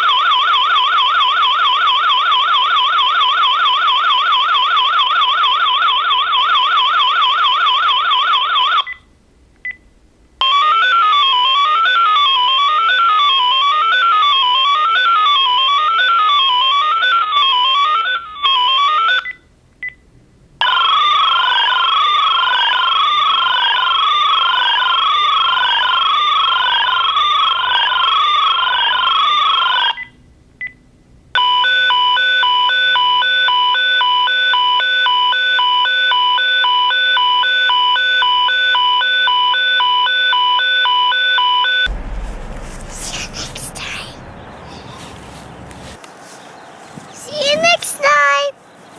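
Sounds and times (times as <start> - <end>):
phone electronic alarm tone: 10.4 - 19.3.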